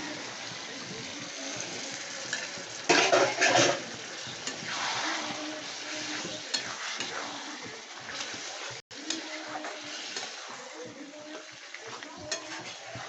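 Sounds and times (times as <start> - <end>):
food sizzling in a pan: 0.0 - 13.0
spatula scraping a pan: 2.2 - 13.0.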